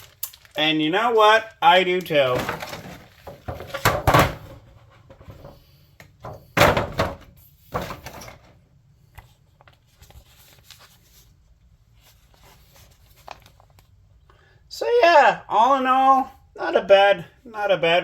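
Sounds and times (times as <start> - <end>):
loud handling knocks: 2.4 - 5.6, 6.2 - 8.5.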